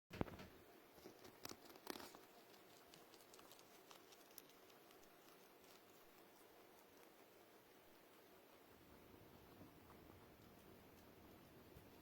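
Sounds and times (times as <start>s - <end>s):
small pet chewing: 0.9s - 12.0s.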